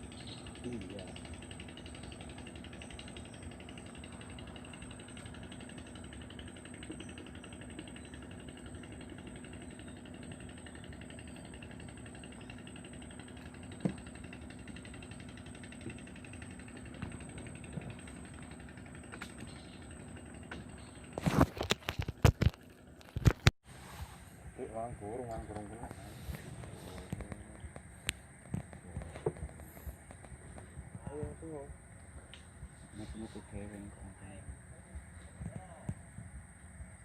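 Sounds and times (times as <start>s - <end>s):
engine idling: 0.0s - 37.0s.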